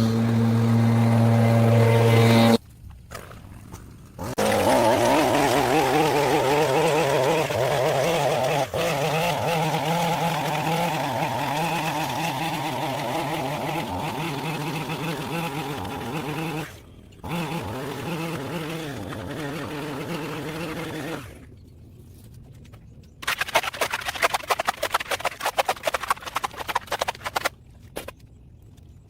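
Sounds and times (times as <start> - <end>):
string trimmer running: 0.0 - 2.6, 4.2 - 21.4.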